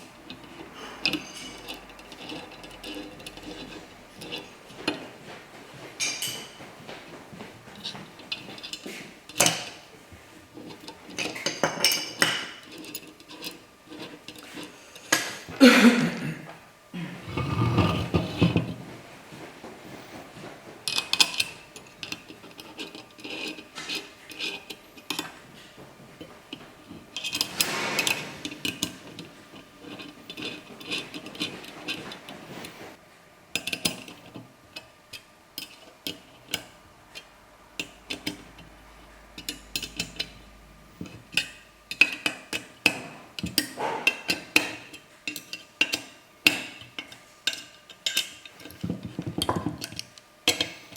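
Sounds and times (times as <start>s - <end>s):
metal tools clinking and scraping: 0.3s - 5.0s, 6.0s - 6.6s, 7.8s - 9.9s, 10.5s - 15.5s, 20.9s - 25.4s, 26.8s - 32.8s, 37.8s - 50.9s.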